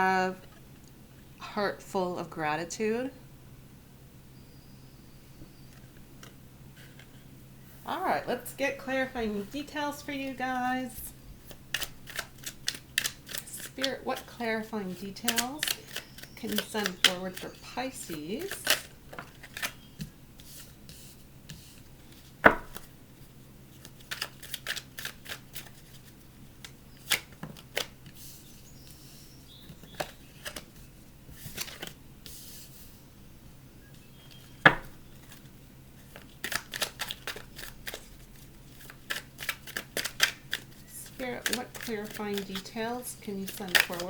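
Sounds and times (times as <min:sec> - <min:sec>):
cards being shuffled: 0:11.4 - 0:29.1, 0:29.7 - 0:32.7, 0:34.3 - 0:44.0.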